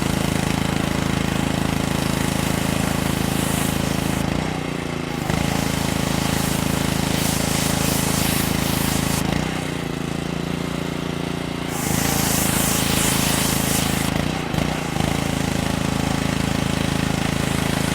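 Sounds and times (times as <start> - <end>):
construction machinery pulsing: 0.0 - 17.9
loud hiss: 2.4 - 4.2, 5.2 - 9.3, 11.6 - 14.2.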